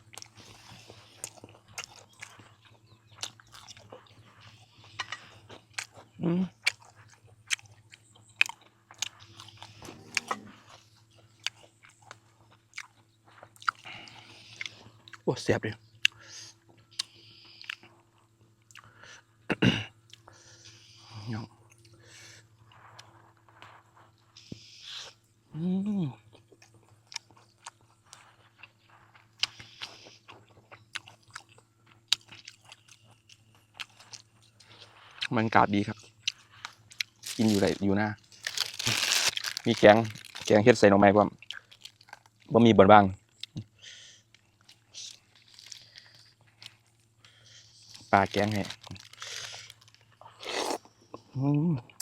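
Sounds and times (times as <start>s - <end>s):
chewing and crunching: 0.0s - 52.0s
person humming: 25.6s - 26.1s.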